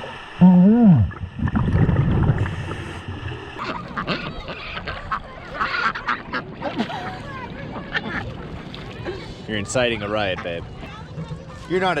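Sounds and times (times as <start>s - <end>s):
wind rumbling on microphone: 1.0s - 5.4s
ducks quacking: 3.6s - 8.6s, 10.0s - 11.8s.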